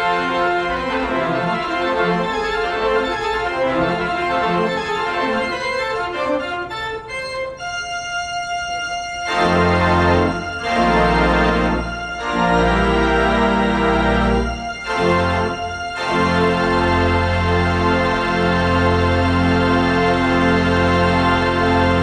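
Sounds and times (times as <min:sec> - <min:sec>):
organ chords: 0:00.0 - 0:22.0.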